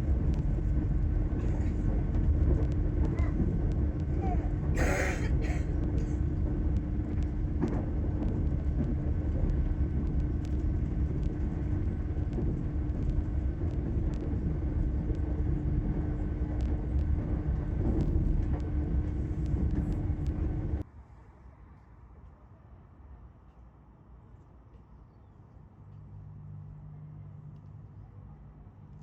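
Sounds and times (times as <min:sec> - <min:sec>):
train rumble inside carriage: 0:00.0 - 0:20.9
constant hum: 0:00.0 - 0:29.0.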